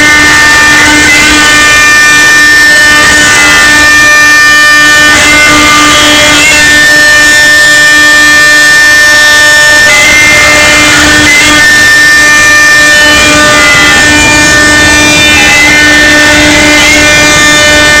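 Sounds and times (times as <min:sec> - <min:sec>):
router spindle cutting wood: 0:10.3 - 0:18.0.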